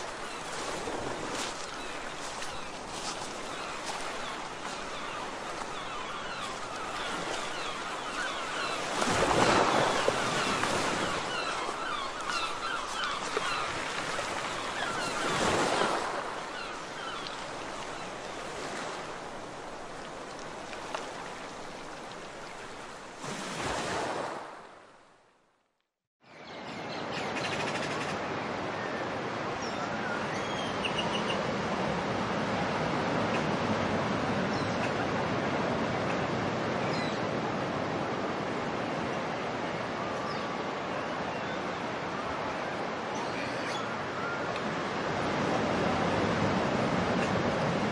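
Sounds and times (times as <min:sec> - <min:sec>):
waves washing on a beach: 0:00.0 - 0:25.0, 0:27.8 - 0:47.9
faint high bird calls: 0:01.3 - 0:18.1.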